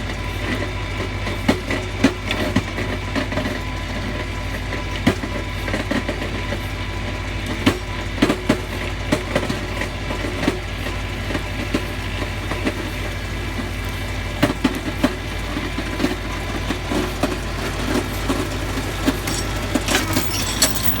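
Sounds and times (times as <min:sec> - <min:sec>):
tractor engine running under load: 0:00.0 - 0:21.0.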